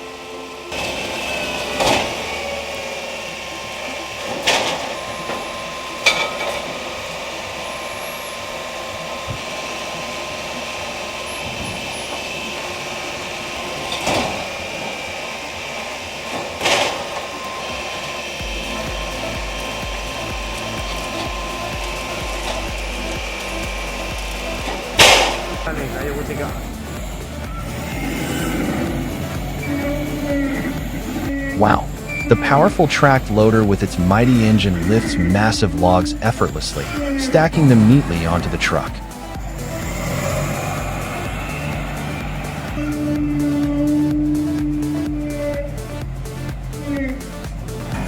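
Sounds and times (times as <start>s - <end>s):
log debarker running: 0.0s - 48.0s
deep hum: 18.4s - 48.0s.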